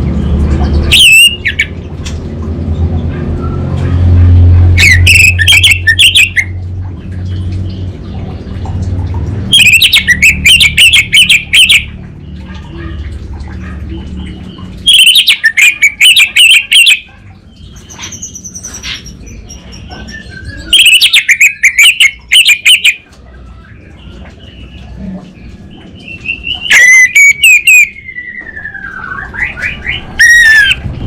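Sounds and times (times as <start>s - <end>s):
thrush singing chattering notes: 0.7s - 1.9s, 4.0s - 6.6s, 9.4s - 12.4s, 14.5s - 24.6s, 25.5s - 30.8s.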